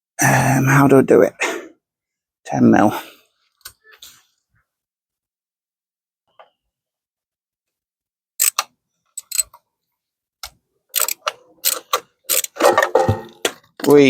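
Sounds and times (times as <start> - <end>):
ratchet clicking: 8.4 - 9.5, 10.9 - 12.6.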